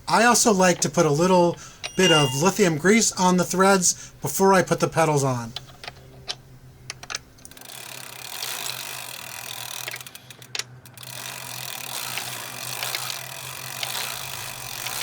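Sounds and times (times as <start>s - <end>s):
ratchet clicking: 7.4s - 15.0s.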